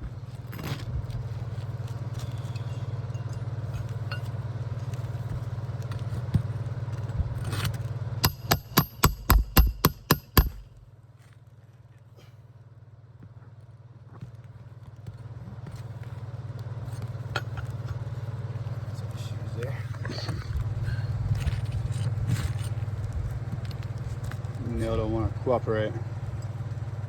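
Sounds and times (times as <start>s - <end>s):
low engine-like hum: 0.0s - 27.0s
hammer striking metal ringing: 8.2s - 10.8s.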